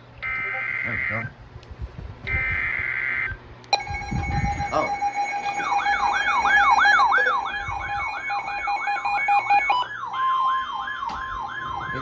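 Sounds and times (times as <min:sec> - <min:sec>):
sweeping electronic siren tone: 0:02.3 - 0:12.0
steady alert tones: 0:03.7 - 0:09.9.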